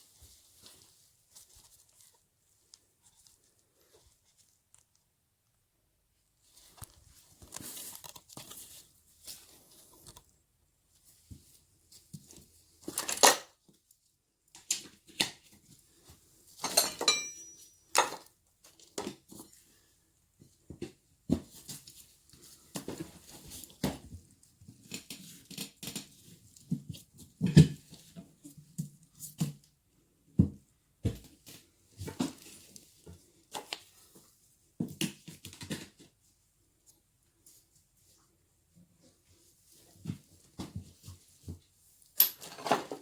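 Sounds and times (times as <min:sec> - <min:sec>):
tools clanking and scraping: 0:16.6 - 0:18.3, 0:42.2 - 0:43.0.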